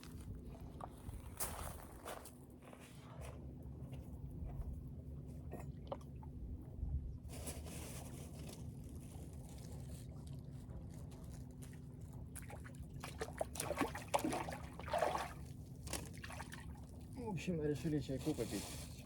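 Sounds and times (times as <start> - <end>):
steady low hum: 0.0 - 19.0
sea water lapping at shore: 9.7 - 19.0.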